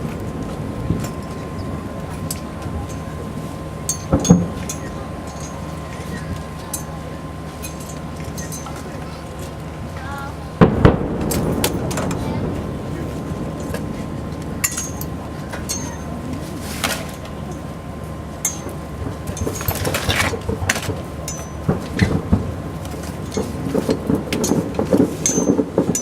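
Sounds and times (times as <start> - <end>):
dense fireworks crackle: 0.0 - 8.2, 8.8 - 26.0
distant fireworks booming: 10.5 - 19.4, 20.4 - 26.0
sharp cracks of fireworks: 10.6 - 17.4, 18.7 - 26.0.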